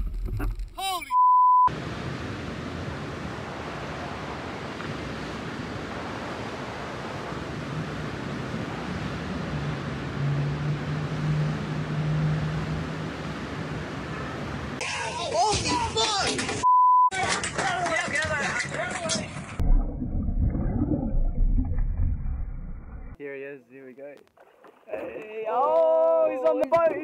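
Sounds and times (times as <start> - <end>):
wind: 0.0 - 27.0
censor bleep: 1.0 - 1.7, 16.6 - 17.1
sea noise: 1.7 - 14.8.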